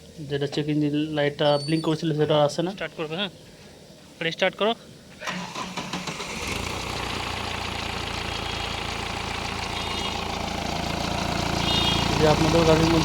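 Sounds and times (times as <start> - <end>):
diesel engine starter cranking: 5.2 - 13.0
diesel engine idling: 5.3 - 13.0.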